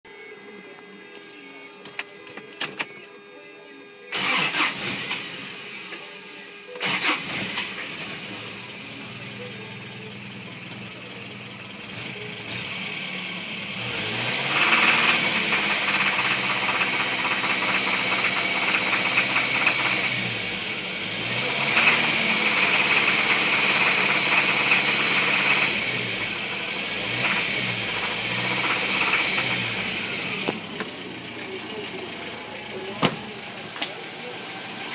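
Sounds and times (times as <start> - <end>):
car engine revving: 4.1 - 5.8, 6.8 - 10.5, 11.2 - 34.9
rapid engine knocking: 14.6 - 20.1.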